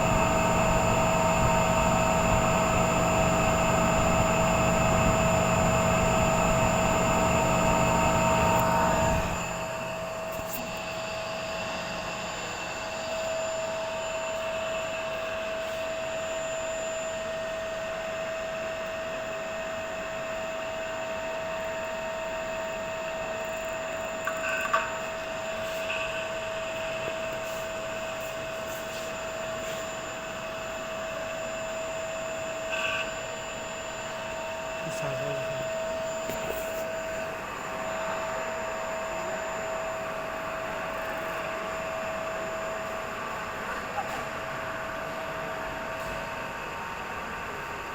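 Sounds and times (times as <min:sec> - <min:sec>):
electric motor whirring: 0:00.0 - 0:09.6.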